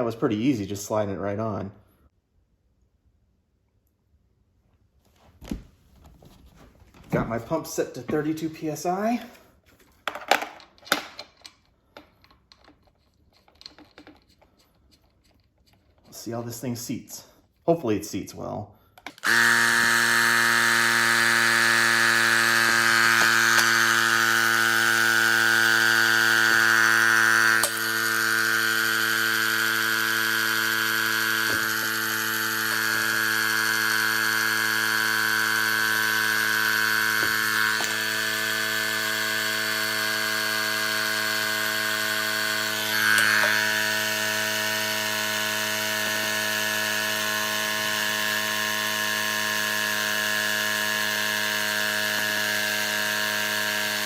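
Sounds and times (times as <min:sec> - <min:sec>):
electric tire inflator buzzing: 0:19.0 - 0:54.0.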